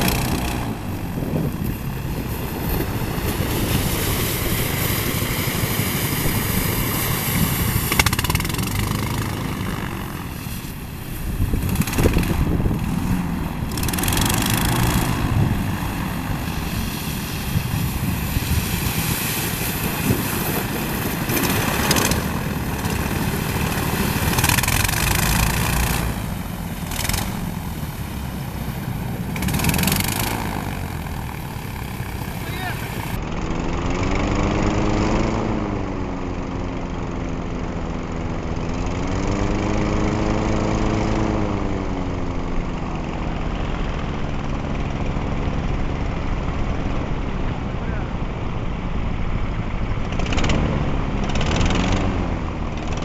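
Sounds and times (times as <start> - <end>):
strong wind rushing: 0.0 - 33.2
airboat engines and propellers: 0.0 - 53.0.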